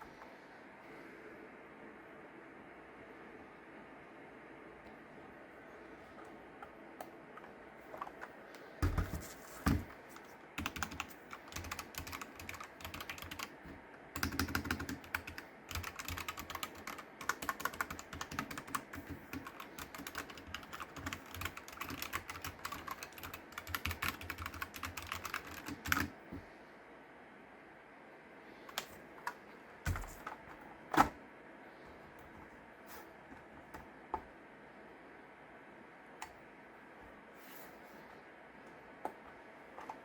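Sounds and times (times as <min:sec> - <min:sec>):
mechanical keyboard typing: 0:10.6 - 0:13.5, 0:14.2 - 0:26.1.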